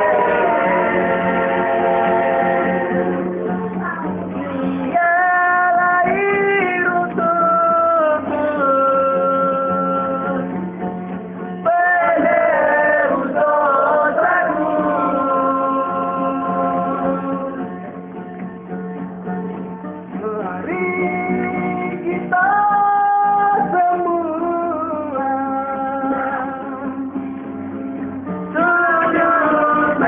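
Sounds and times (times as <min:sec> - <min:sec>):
person singing: 0:00.0 - 0:10.6, 0:11.6 - 0:17.9, 0:20.2 - 0:27.2, 0:28.6 - 0:30.0
guitar accompaniment: 0:00.0 - 0:30.0.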